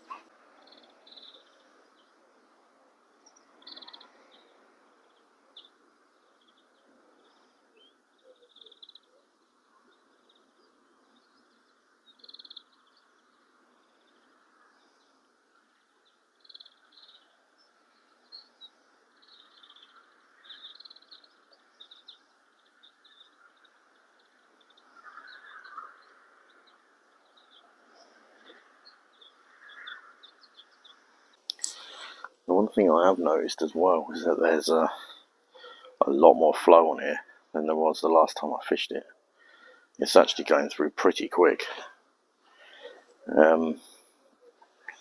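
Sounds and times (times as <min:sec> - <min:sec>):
background hiss: 0:00.0 - 0:45.0
small birds chirping: 0:00.0 - 0:45.0.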